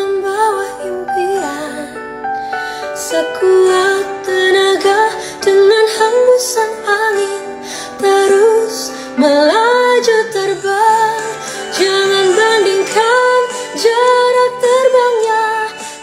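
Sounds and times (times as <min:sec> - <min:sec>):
woman singing: 0:00.0 - 0:16.0
instrumental accompaniment: 0:08.0 - 0:16.0.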